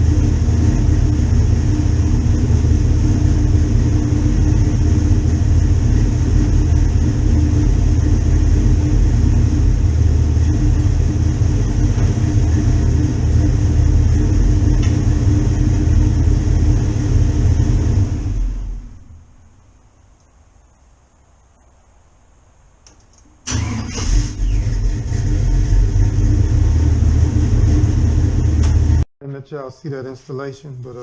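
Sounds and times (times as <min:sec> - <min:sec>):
engine running low rumble: 0:00.0 - 0:29.1.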